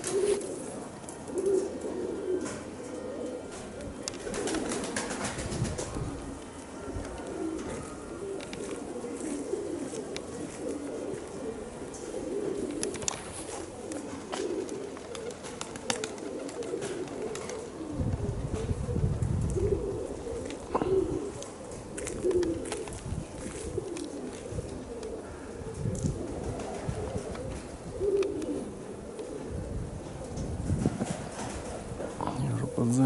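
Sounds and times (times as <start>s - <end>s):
pigeons cooing: 0.0s - 33.0s
wind buffeting microphone: 5.2s - 7.9s, 17.8s - 28.3s, 29.0s - 32.8s.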